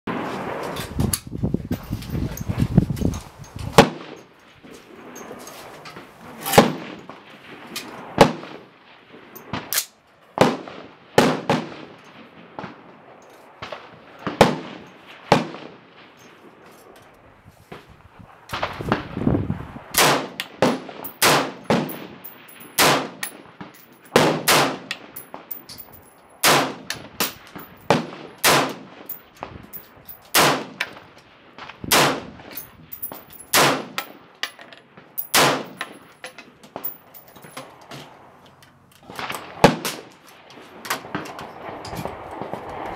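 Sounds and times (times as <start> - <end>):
rifle shots with ringing tail: 13.6 - 16.4, 20.0 - 31.1, 31.7 - 34.2, 35.1 - 36.1.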